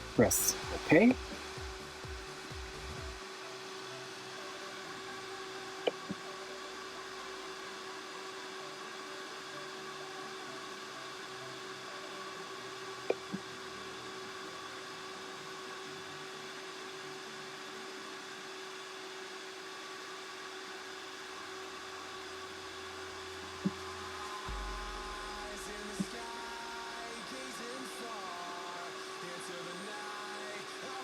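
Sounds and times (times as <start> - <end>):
cooling fans humming: 0.0 - 8.8, 21.0 - 31.0.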